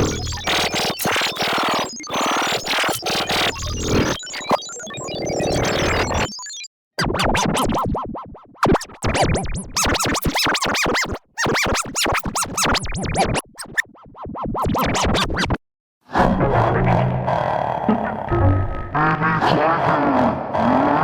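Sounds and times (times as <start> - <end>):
stuttering electronic effect: 8.6 - 15.6
scratch-like pitch sweeps: 9.1 - 15.6.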